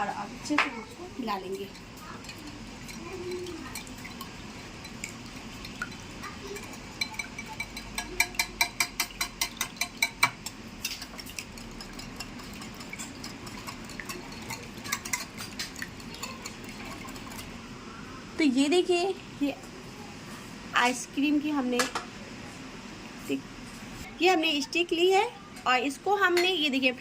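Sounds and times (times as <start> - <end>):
utensil clinking against bowl: 1.4 - 17.5.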